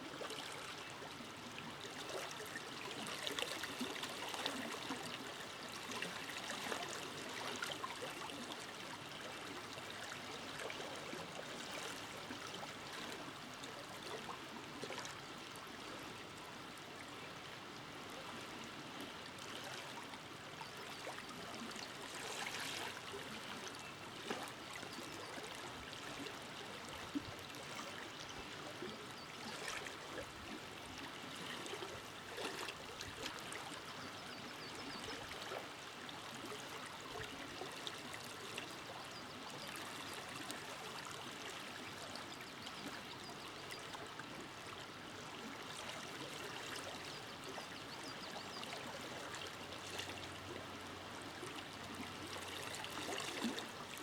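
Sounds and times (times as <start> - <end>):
river water flowing over stones: 21.2 - 54.0.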